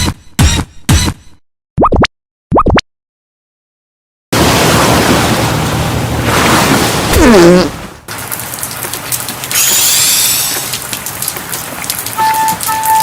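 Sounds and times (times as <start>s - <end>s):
bright crackle: 8.1s - 13.0s
rain-like hiss with ticks: 8.1s - 13.0s.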